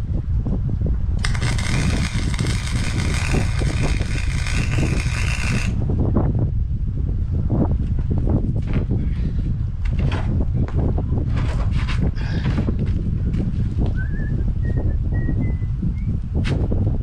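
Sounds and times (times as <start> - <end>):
wind rumble on microphone: 0.0 - 17.0
welding arc crackling and hissing: 1.2 - 5.8.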